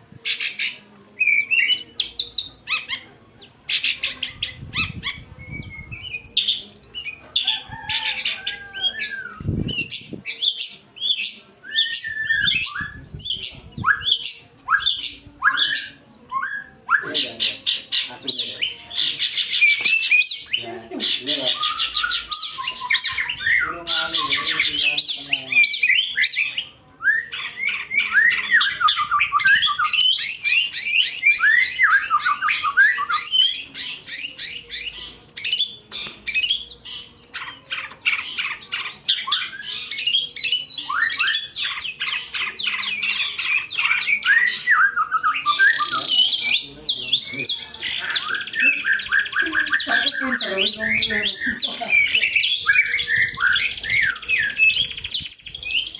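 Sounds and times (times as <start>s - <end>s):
birds singing and chattering: 0.0s - 55.9s.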